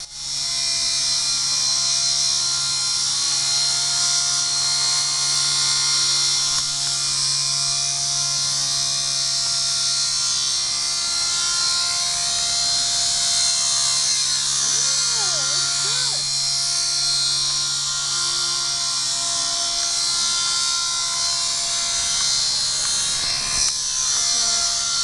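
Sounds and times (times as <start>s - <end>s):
model helicopter motor whining: 0.0s - 25.0s.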